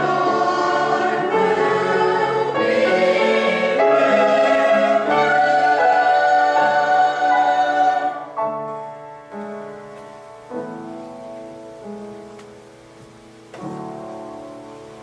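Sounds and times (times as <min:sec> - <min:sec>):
choir holding a chord: 0:00.0 - 0:08.4
piano playing slow chords: 0:00.0 - 0:15.0.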